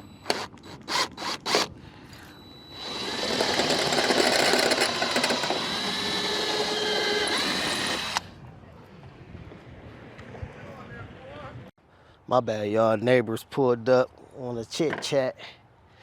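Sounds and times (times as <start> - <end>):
power drill drilling into metal: 0.2 - 1.7, 2.4 - 8.2.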